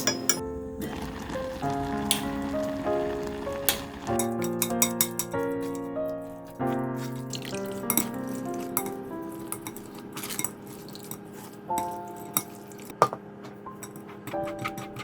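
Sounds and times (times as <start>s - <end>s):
utensils clinking against dishes: 0.0s - 0.4s, 3.7s - 15.0s
background music: 0.0s - 10.0s.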